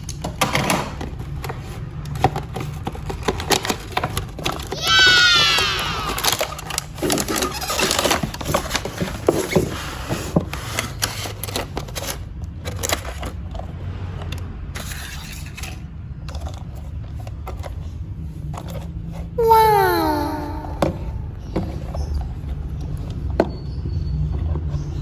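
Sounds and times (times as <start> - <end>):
toy bus clicks and scrapes: 0.0 - 19.4.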